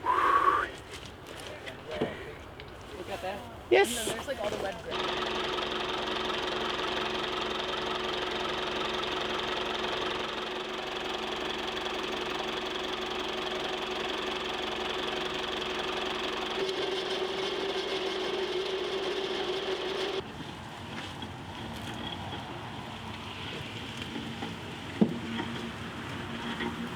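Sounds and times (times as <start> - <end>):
engine running: 4.9 - 20.3.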